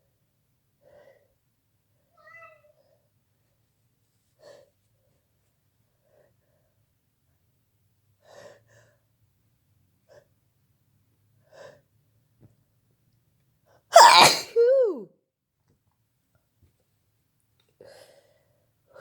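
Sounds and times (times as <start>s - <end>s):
person sneezing: 14.0s - 14.9s.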